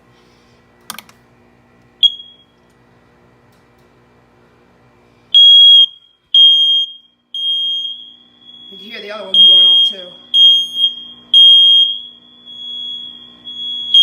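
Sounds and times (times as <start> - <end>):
smoke alarm click: 2.0 - 2.6, 9.4 - 14.0
smoke alarm piercing beeps: 2.0 - 2.6, 5.3 - 14.0.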